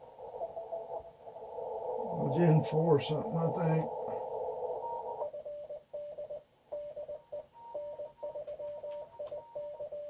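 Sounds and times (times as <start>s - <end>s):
morse code tone: 4.6s - 10.0s.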